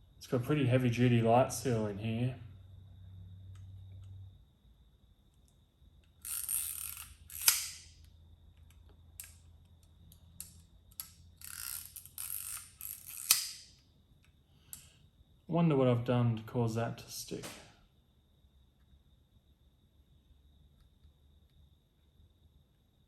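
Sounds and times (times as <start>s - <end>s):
camera winding ratchet: 6.2s - 7.9s, 10.4s - 13.7s.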